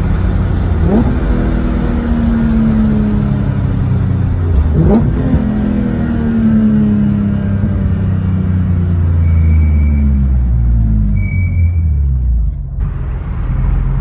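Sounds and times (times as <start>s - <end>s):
car engine revving loud: 0.0s - 10.8s.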